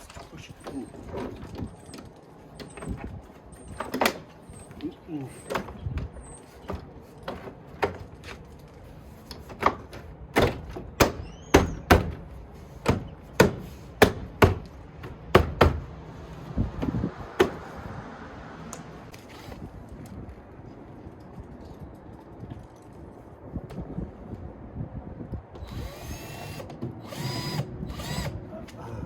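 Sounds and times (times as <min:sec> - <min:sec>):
sharp knocks on door panel: 0:09.6 - 0:12.2, 0:12.8 - 0:15.8.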